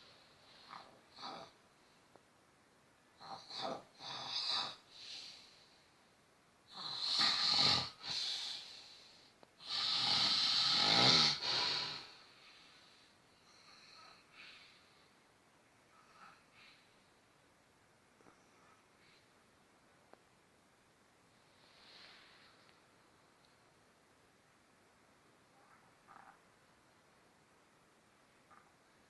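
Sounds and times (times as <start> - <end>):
man snoring loudly: 6.7 - 8.2, 9.6 - 12.1.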